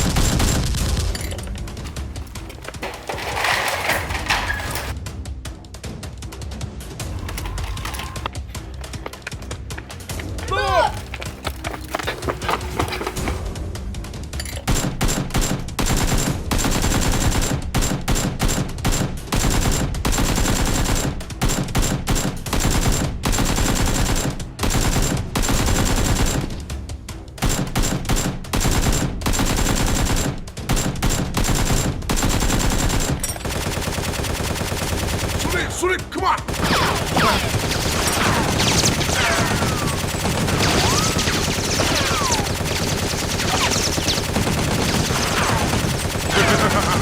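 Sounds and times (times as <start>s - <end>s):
automatic gunfire bursts: 14.7s - 26.6s, 27.4s - 35.7s, 36.5s - 47.0s.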